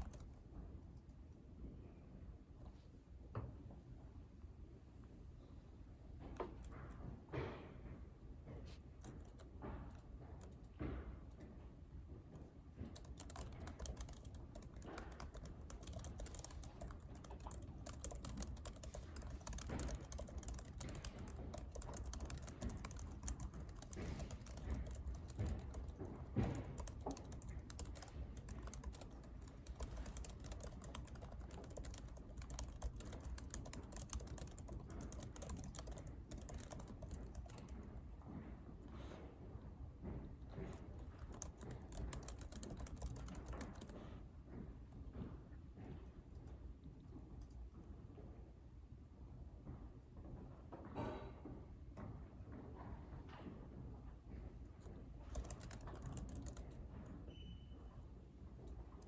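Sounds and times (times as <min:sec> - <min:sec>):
keyboard typing: 0:00.0 - 0:00.4, 0:09.0 - 0:10.7, 0:12.8 - 0:38.0, 0:40.7 - 0:44.2, 0:55.2 - 0:56.9
low room hum: 0:00.0 - 0:59.0.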